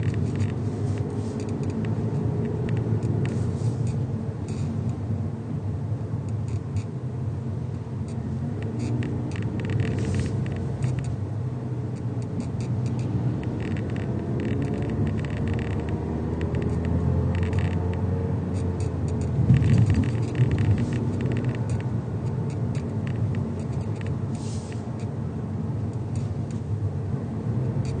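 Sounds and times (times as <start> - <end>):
car road and engine rumble: 0.0 - 28.0
rattling clicks: 12.2 - 18.0, 18.8 - 24.2.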